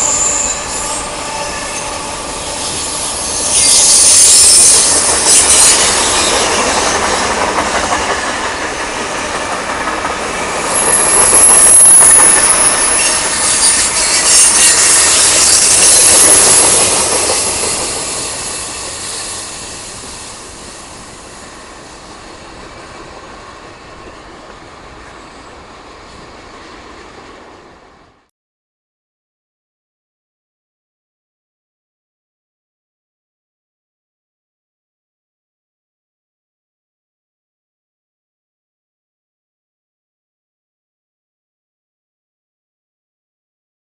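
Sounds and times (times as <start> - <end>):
high wheel squeal: 0.0 - 9.4, 10.1 - 24.4
wheels clattering over rail joints: 3.6 - 19.3.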